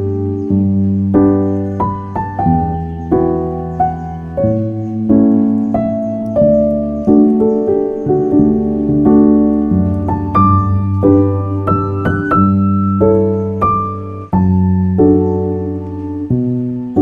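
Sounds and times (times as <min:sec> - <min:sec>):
gentle piano melody: 0:00.0 - 0:17.0.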